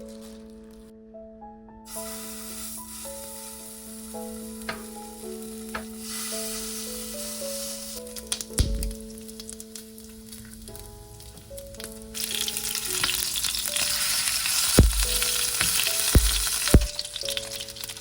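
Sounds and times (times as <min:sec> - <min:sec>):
food sizzling in a pan: 0:01.9 - 0:18.0
dull knocks: 0:08.6 - 0:09.1, 0:14.8 - 0:15.2, 0:16.2 - 0:16.9.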